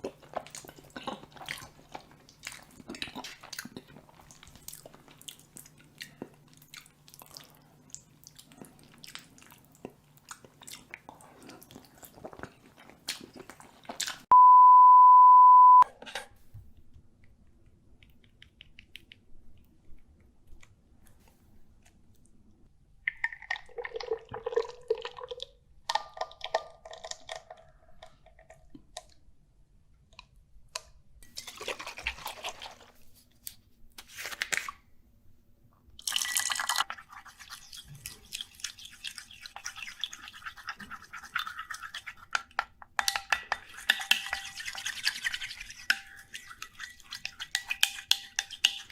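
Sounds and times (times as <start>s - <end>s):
chewing and crunching: 0.0s - 14.3s, 36.0s - 42.5s
loud steady beep: 14.3s - 15.8s.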